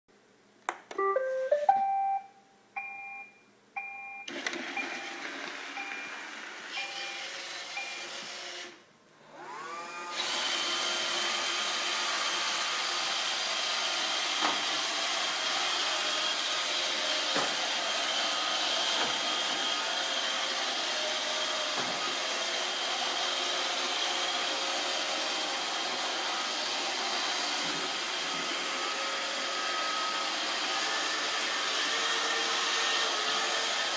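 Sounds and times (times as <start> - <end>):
robot vacuum startup beeps: 1.0 - 8.2
robot vacuum motor whine: 4.3 - 33.9.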